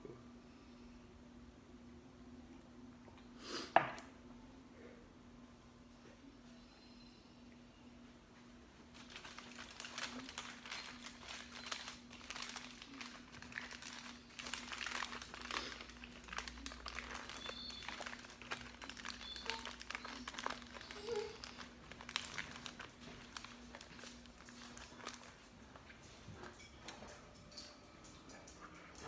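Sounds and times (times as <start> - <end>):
crinkling and rustling: 8.9 - 29.0.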